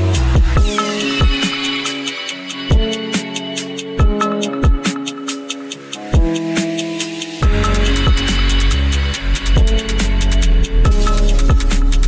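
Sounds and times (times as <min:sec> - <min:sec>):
sliding bass notes: 0:00.0 - 0:00.7, 0:07.4 - 0:12.0
heavy electronic bass: 0:00.0 - 0:01.4, 0:07.4 - 0:12.0
hi-hat ticks: 0:00.1 - 0:12.0.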